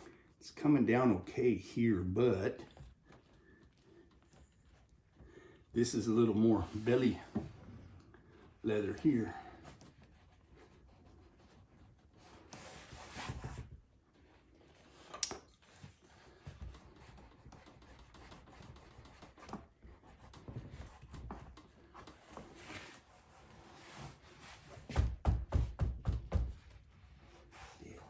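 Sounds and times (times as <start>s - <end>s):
leather rubbing by hand: 18.4s - 25.0s.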